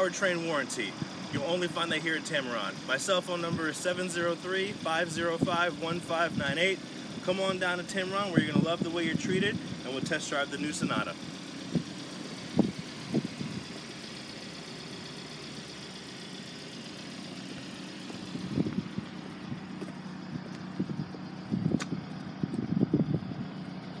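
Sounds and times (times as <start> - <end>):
vehicle engine idling: 0.0 - 24.0
sharp click: 21.7 - 22.0.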